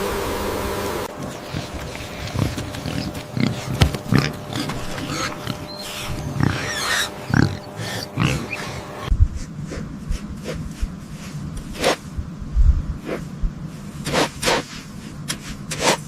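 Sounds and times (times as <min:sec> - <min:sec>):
farm animal calling: 0:01.1 - 0:09.1
animal snuffling: 0:01.1 - 0:12.1, 0:13.0 - 0:16.0.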